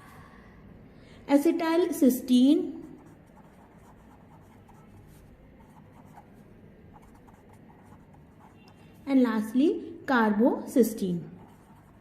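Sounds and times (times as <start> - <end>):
pen scratching on paper: 2.7 - 9.0, 11.2 - 12.0.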